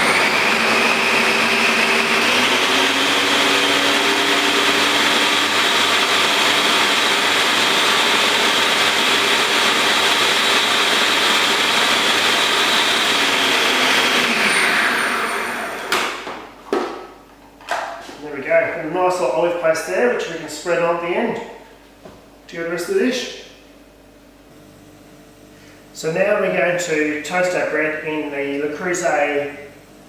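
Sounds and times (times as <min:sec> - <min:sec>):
blender running: 0:00.0 - 0:16.3.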